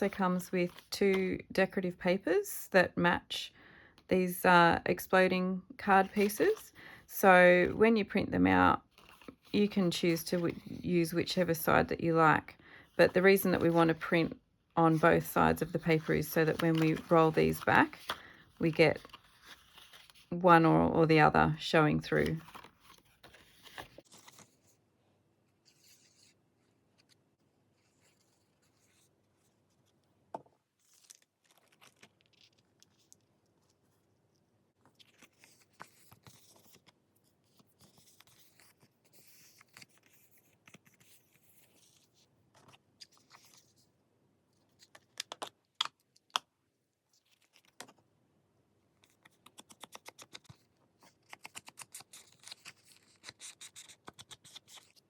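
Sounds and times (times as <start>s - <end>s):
paper rustling: 0.1s - 1.3s, 6.0s - 6.8s, 8.9s - 11.4s, 13.0s - 14.2s, 14.9s - 20.4s, 22.0s - 24.8s, 34.8s - 43.9s, 49.0s - 55.0s
scissors cutting paper: 49.2s - 55.0s.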